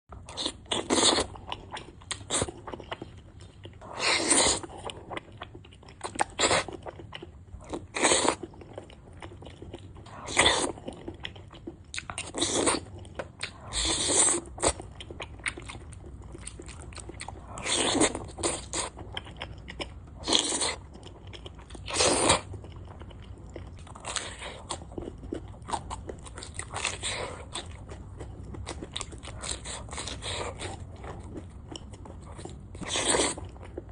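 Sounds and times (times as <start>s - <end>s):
person eating loud mouthfuls: 3.8s - 4.9s, 13.4s - 14.8s.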